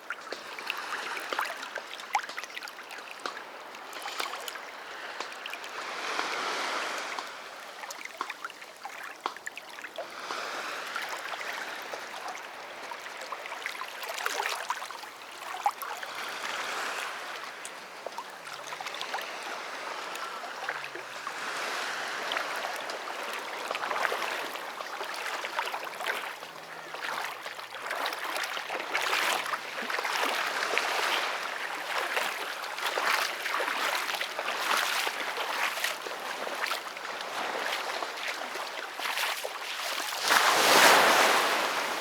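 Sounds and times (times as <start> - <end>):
sea waves breaking: 3.2 - 7.7, 28.0 - 42.0.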